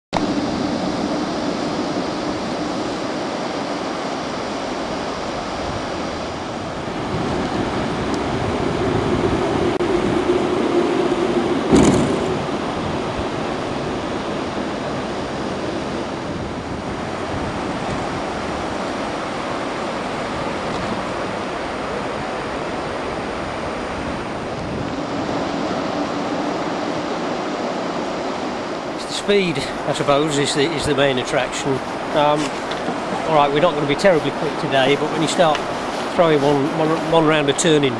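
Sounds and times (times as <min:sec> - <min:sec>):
wind rushing over microphone: 0:00.2 - 0:37.9
sharp bump: 0:11.7 - 0:12.5.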